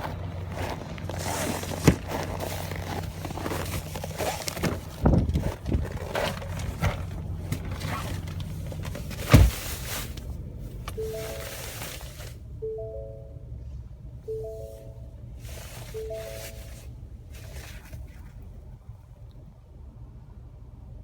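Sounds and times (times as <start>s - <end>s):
engine idling with slight knock: 0.0s - 19.6s
sharp thumps and crunches: 0.6s - 10.2s
short plucked music tune: 11.0s - 11.7s, 12.6s - 13.6s, 14.3s - 15.2s, 15.9s - 16.8s.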